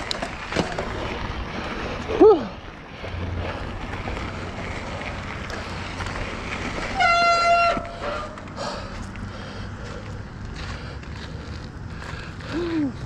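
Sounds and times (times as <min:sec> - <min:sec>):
rumble of riding on a trail: 0:00.0 - 0:13.0
bike disc brakes squealing: 0:06.8 - 0:08.5.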